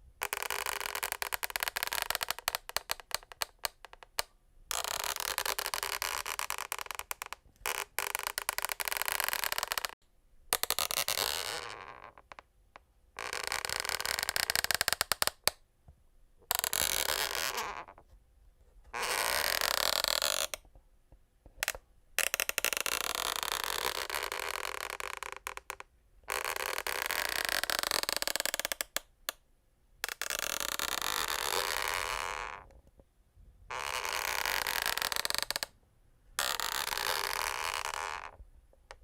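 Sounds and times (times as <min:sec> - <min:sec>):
wooden floorboards creaking: 0:33.7 - 0:35.7, 0:36.4 - 0:38.4.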